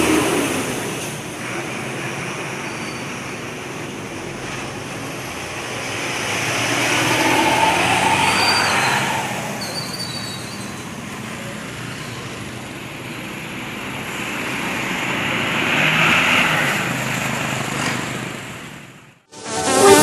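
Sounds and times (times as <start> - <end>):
roadside traffic: 0.0 - 20.0
vehicle passing: 3.8 - 18.6
electronic dance music: 19.3 - 20.0.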